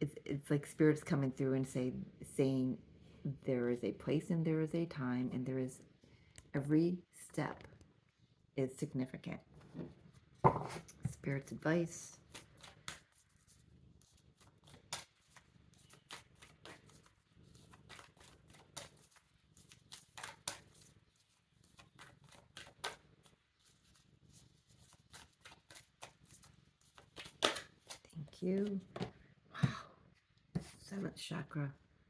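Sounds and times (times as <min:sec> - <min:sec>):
cards shuffling: 0:25.1 - 0:29.1.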